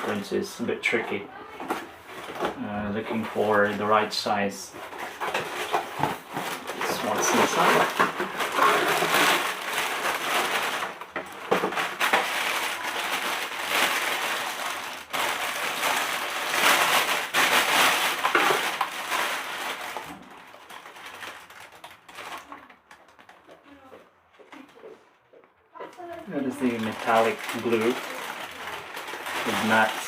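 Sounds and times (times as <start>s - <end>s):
packaging crinkling and rustling: 0.0s - 25.0s, 25.8s - 30.0s.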